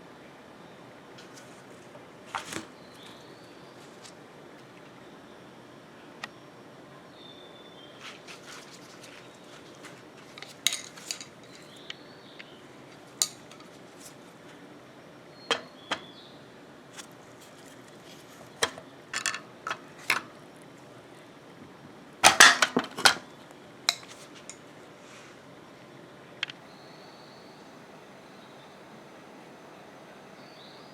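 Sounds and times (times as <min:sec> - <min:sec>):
dishwasher rack parts clinking: 0:10.3 - 0:11.8, 0:15.5 - 0:16.0, 0:22.2 - 0:23.2.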